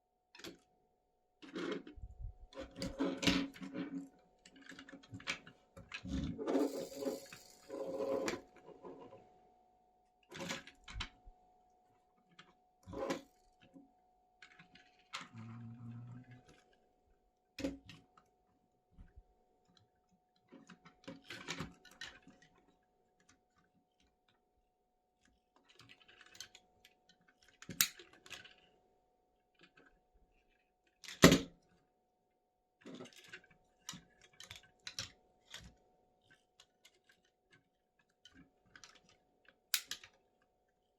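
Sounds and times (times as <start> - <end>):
plastic parts clicking and rattling: 2.6 - 9.2, 38.2 - 40.2.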